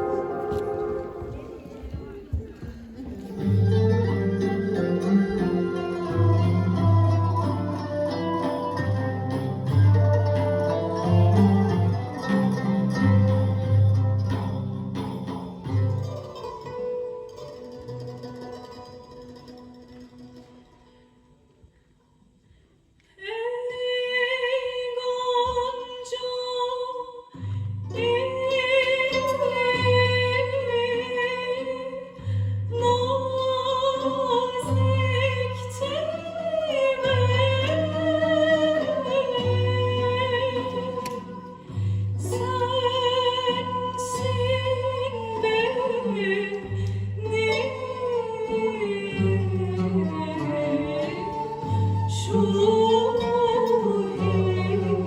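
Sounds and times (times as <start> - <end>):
woman singing with vibrato: 0.0 - 2.4, 23.2 - 55.0.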